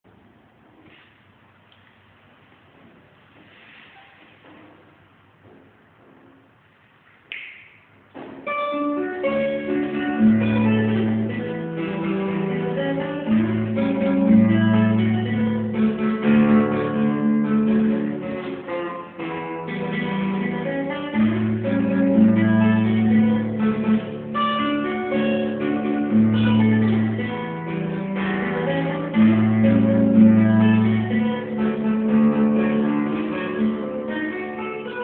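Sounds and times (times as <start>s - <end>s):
fingerpicked acoustic guitar: 8.4s - 35.0s.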